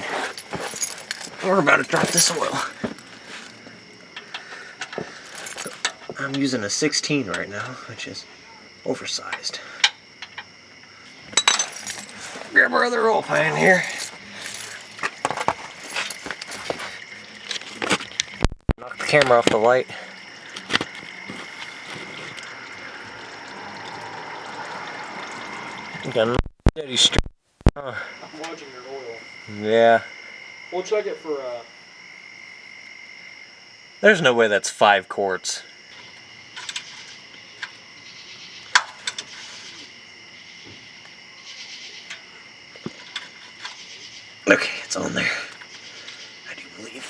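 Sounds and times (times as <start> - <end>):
crickets chirping: 0.0 - 27.2, 27.8 - 47.0
oil draining into a pan: 16.7 - 18.2, 19.0 - 26.2.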